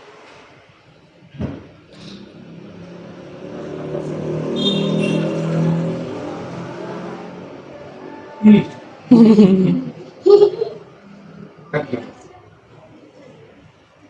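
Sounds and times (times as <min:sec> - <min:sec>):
thump: 0:01.4 - 0:01.8
vehicle engine running: 0:01.8 - 0:09.1.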